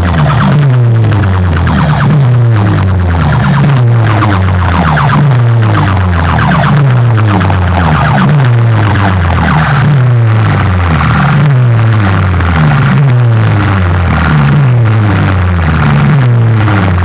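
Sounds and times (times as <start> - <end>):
distorted bass-heavy electronic falling tone: 0.0 - 17.0.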